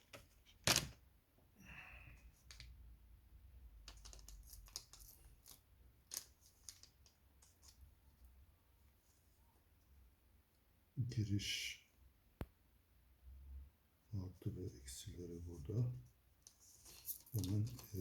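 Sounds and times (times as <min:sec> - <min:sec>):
small parts and tools clicking: 0:03.8 - 0:07.9.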